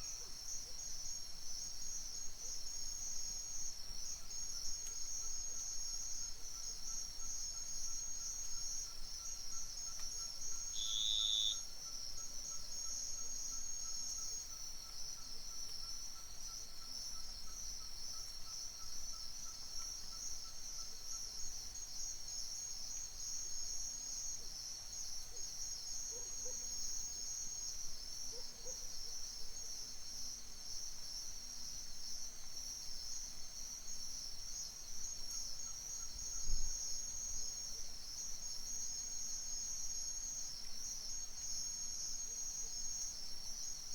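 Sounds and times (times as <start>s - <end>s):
crickets and insects trilling: 10.6s - 14.6s.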